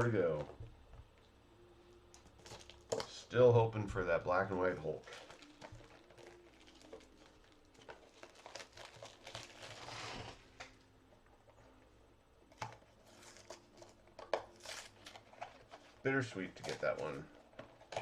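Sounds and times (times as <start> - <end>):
packaging crinkling and tearing: 2.1 - 3.2, 4.7 - 10.8, 12.4 - 18.0.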